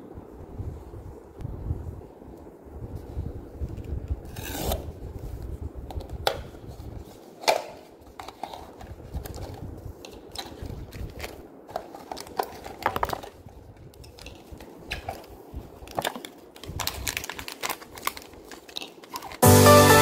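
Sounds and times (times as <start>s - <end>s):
packaging clicks and crinkles: 7.4s - 19.4s.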